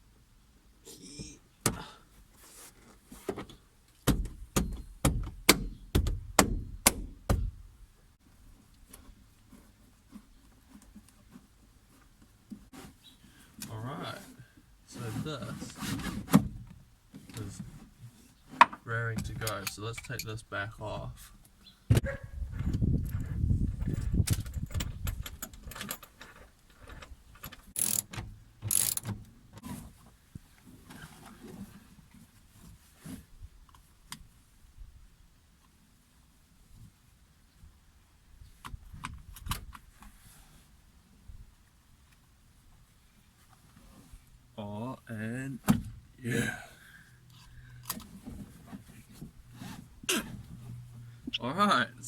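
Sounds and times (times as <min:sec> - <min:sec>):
scraping rustles: 0:02.2 - 0:03.7, 0:08.4 - 0:20.4, 0:29.6 - 0:33.6, 0:42.5 - 0:44.6, 0:47.3 - 0:51.3
seat belt clunks: 0:03.3 - 0:07.6
sharp knocks: 0:04.0 - 0:07.6
socket ratchet clicking: 0:27.8 - 0:29.1.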